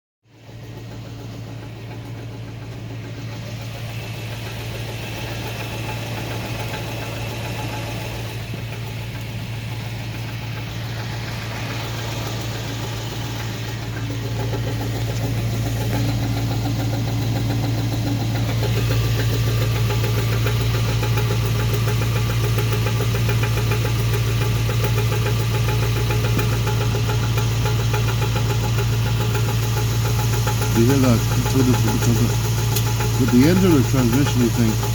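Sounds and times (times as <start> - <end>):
truck engine idling: 0.2 - 34.9
repeating knock under truck: 0.5 - 30.8.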